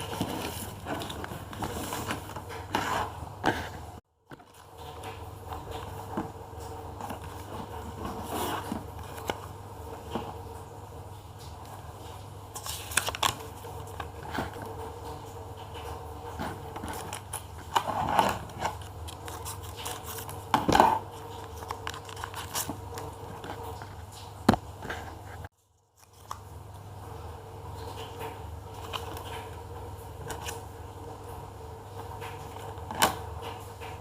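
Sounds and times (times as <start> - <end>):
paper crinkling and tearing: 0.0 - 3.8, 11.4 - 26.5.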